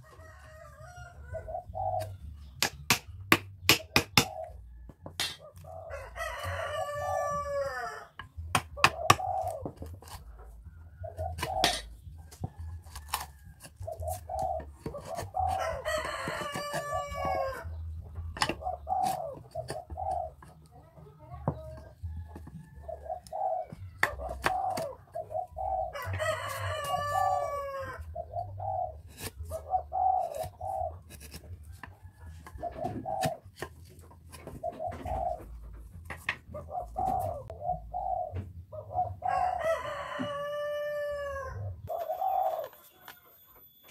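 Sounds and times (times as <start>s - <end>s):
chickens clucking: 0.0s - 43.9s
chisel knocking on wood: 2.6s - 4.3s, 8.2s - 10.2s, 14.6s - 17.4s, 18.3s - 20.6s
rooster crowing: 5.9s - 8.1s, 15.5s - 17.6s, 25.9s - 28.0s, 39.2s - 41.7s.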